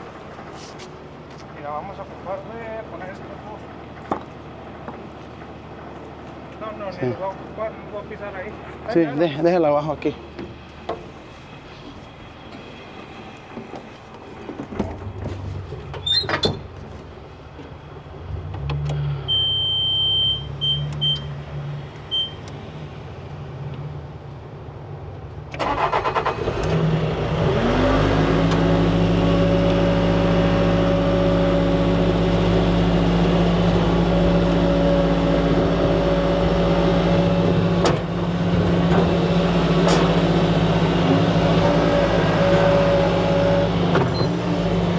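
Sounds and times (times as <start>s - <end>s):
diesel engine starting and running: 0.0s - 44.9s
short high beeps: 19.3s - 21.3s.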